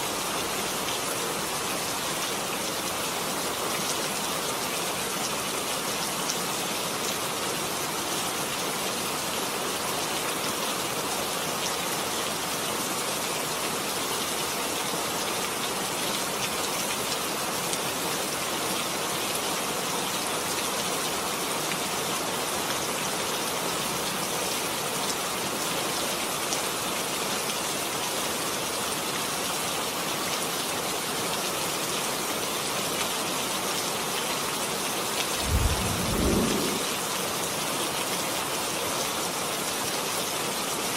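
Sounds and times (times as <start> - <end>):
steady rain: 0.0 - 40.9
low rumble of thunder: 35.4 - 37.0.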